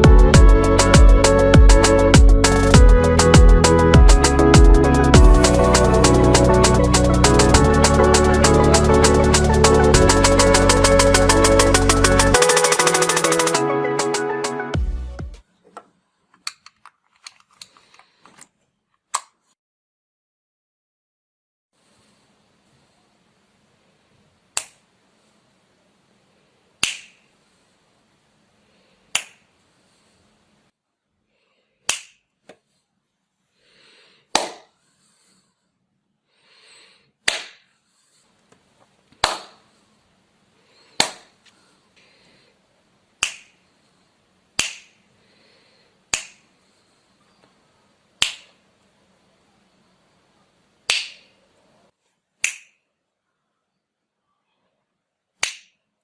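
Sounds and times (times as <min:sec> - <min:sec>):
sharp snaps: 0:24.5 - 0:24.8, 0:26.8 - 0:27.3, 0:29.1 - 0:29.5, 0:31.8 - 0:32.6, 0:34.3 - 0:34.7, 0:37.2 - 0:37.7, 0:39.2 - 0:39.6, 0:40.9 - 0:41.4, 0:43.2 - 0:43.6, 0:44.6 - 0:45.0, 0:46.1 - 0:46.5, 0:48.2 - 0:48.6, 0:50.8 - 0:51.4, 0:52.4 - 0:52.9, 0:55.4 - 0:55.8.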